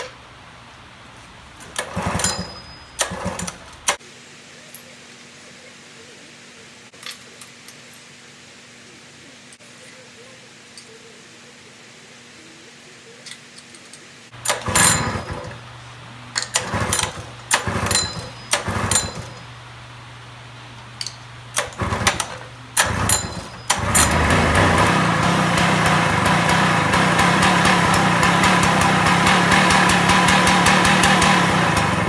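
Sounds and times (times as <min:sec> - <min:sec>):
small engine cranking and running: 0:01.6 - 0:04.0, 0:14.4 - 0:15.7, 0:16.4 - 0:19.5, 0:21.0 - 0:32.0.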